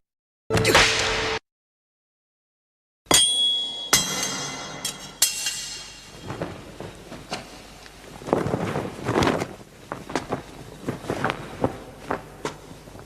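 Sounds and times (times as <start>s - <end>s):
metal weapons clashing: 3.1s - 6.2s.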